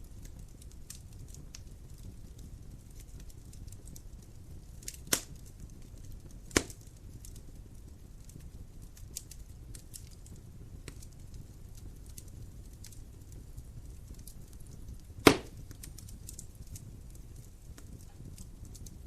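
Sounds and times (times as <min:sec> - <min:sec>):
fire crackling: 0:00.0 - 0:19.0
fire rumbling: 0:00.0 - 0:19.0
loud sharp pop: 0:06.5 - 0:06.8, 0:15.2 - 0:15.6.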